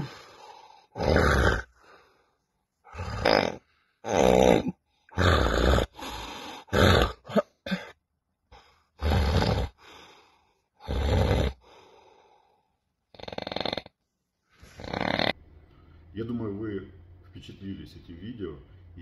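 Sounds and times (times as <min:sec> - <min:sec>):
breath out: 0:00.0 - 0:01.0
man snoring heavily: 0:00.0 - 0:02.1, 0:02.9 - 0:07.8, 0:09.0 - 0:12.5, 0:13.1 - 0:14.0, 0:14.6 - 0:15.4.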